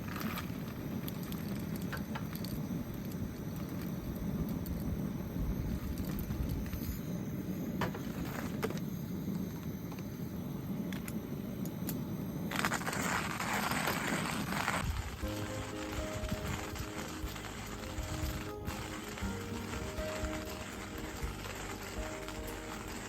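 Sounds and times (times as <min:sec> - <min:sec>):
coffee beans crunching in grinder: 0:12.5 - 0:23.0
music: 0:15.2 - 0:23.0.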